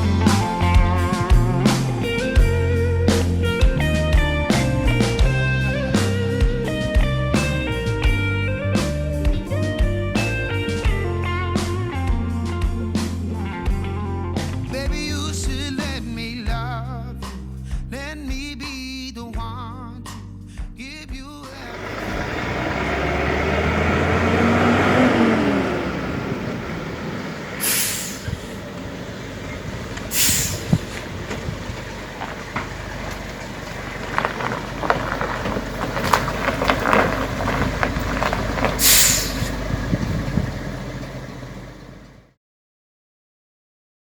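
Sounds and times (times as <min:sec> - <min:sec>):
truck engine running: 0:00.0 - 0:15.3, 0:21.4 - 0:42.4
compressed air hisses: 0:27.6 - 0:28.6, 0:30.0 - 0:31.1, 0:38.8 - 0:39.6.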